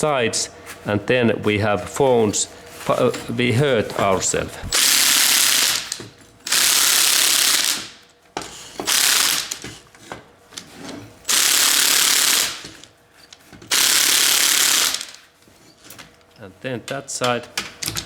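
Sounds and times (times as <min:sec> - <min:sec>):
impact driver bursts: 0:04.6 - 0:08.0, 0:08.7 - 0:09.8, 0:11.3 - 0:12.9, 0:13.7 - 0:15.2.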